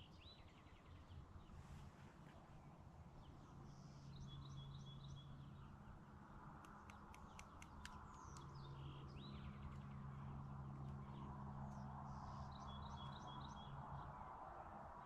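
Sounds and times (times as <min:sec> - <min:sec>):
sharp clicks: 0:06.6 - 0:08.6.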